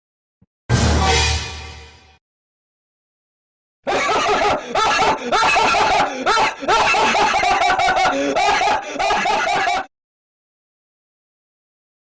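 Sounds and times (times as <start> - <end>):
laughter sound effect: 3.9 - 9.9.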